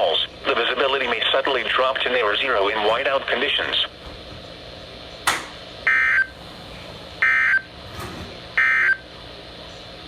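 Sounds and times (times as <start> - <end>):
radio hiss: 0.0 - 4.0.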